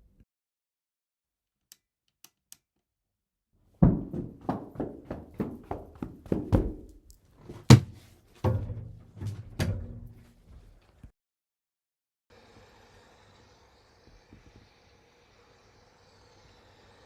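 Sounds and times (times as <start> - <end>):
quick dull thuds: 3.8 - 10.3.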